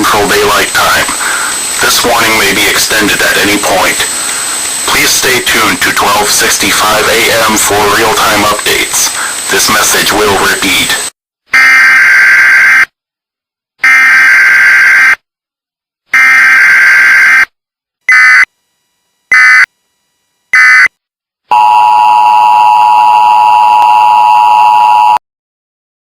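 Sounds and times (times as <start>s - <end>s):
screeching digital data tones: 0.0s - 12.9s.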